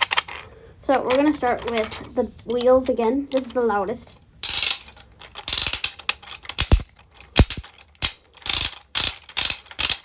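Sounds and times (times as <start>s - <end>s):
plastic fidget wheel ratcheting: 4.4s - 10.0s.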